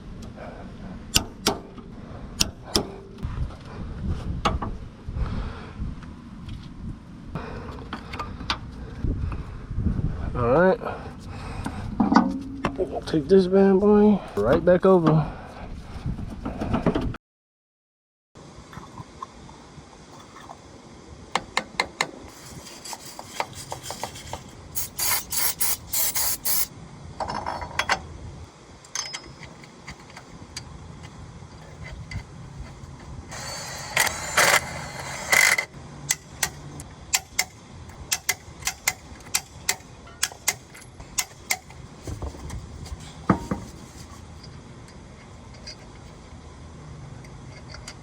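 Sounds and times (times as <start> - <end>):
tools clicking on metal parts: 33.3 - 41.8.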